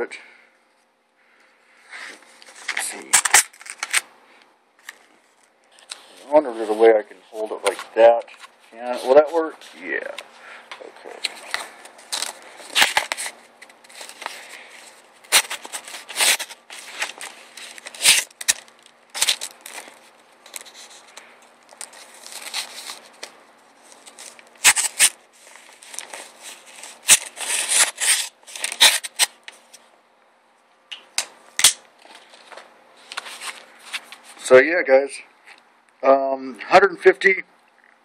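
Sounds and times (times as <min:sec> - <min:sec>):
rustling: 0:04.8 - 0:29.8, 0:32.0 - 0:34.4.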